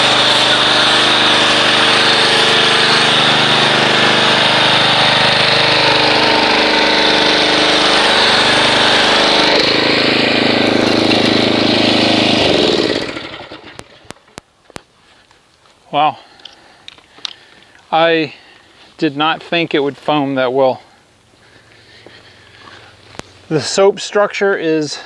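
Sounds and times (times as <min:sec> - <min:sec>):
spray hissing: 0:00.0 - 0:06.7
pressure washer running: 0:00.0 - 0:14.4, 0:21.2 - 0:23.6.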